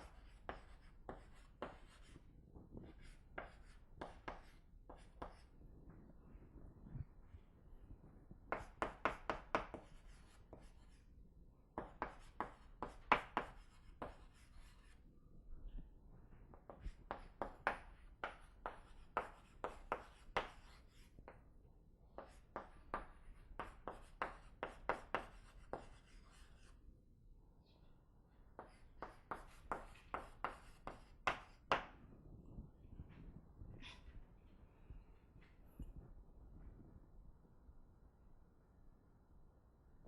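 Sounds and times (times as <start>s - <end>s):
writing taps on a board: 0.0s - 2.0s, 2.9s - 5.4s, 8.5s - 10.7s, 11.8s - 14.4s, 16.5s - 21.4s, 22.2s - 26.4s, 28.6s - 32.0s.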